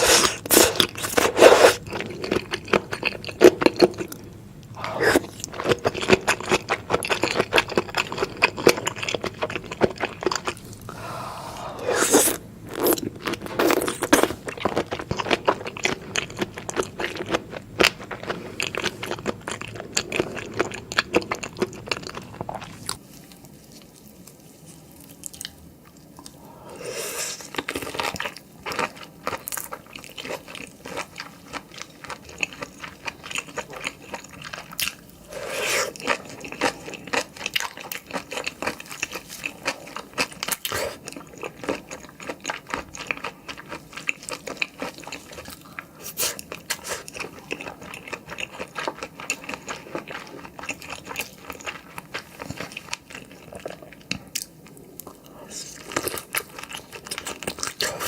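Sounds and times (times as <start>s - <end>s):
wet chewing: 27.4s - 58.0s.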